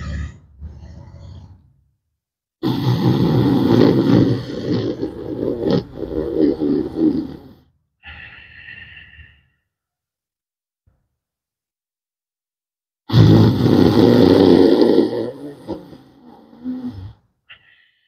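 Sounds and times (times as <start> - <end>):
rasping throat breathing: 2.6 - 9.7.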